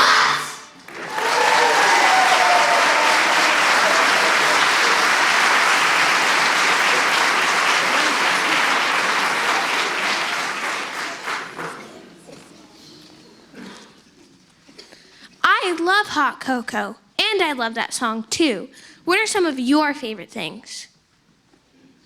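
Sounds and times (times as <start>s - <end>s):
audience cheering: 0.0s - 11.8s
audience applauding: 0.8s - 12.1s.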